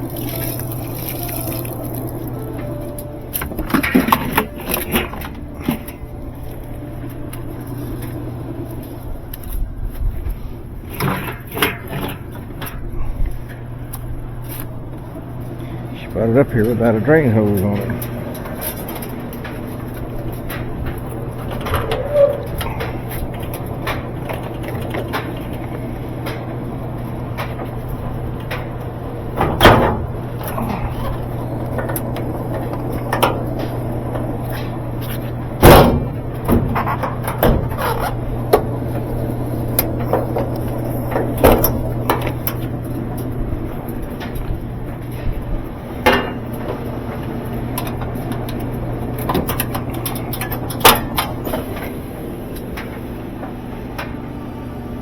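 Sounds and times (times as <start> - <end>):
steady low hum: 0.0 - 55.0
knocks and clanks: 2.4 - 9.0, 16.5 - 52.0.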